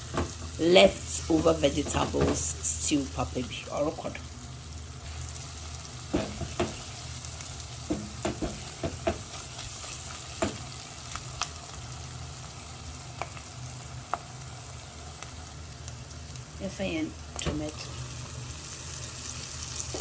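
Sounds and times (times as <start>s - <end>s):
stew sizzling in a pot: 0.0s - 20.0s
utensil knocking against pot: 7.9s - 9.3s.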